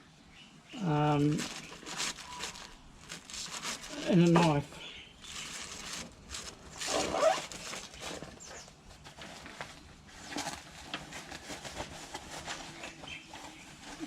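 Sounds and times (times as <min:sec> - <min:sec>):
fabric rustling and scraping: 0:01.1 - 0:04.6, 0:05.2 - 0:14.0.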